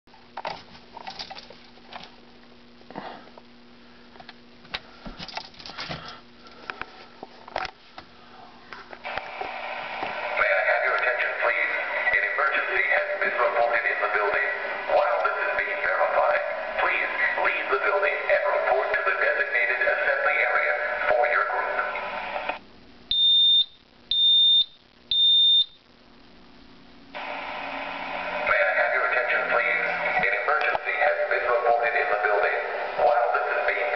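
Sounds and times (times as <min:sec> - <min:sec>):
faint steady hum: 0:00.1 - 0:33.9
recorded voice message: 0:10.0 - 0:22.6, 0:28.1 - 0:33.9
smoke detector beeps: 0:23.1 - 0:25.8.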